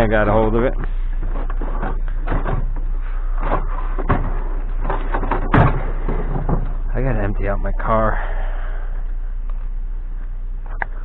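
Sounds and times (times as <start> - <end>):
knocks and clunks: 0.6 - 7.0.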